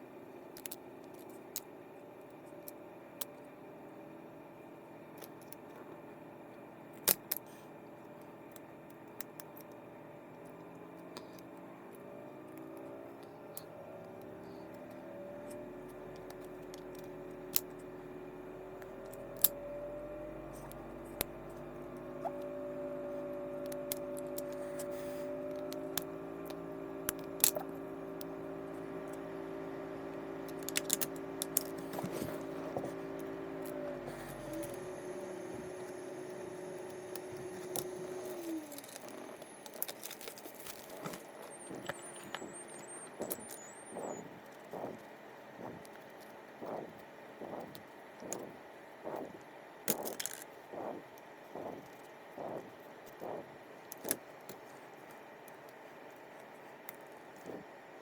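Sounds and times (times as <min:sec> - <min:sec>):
steady hum: 0:00.0 - 0:58.0
small metal parts clicking: 0:25.5 - 0:28.3, 0:30.5 - 0:32.4, 0:37.1 - 0:42.5, 0:49.9 - 0:50.6.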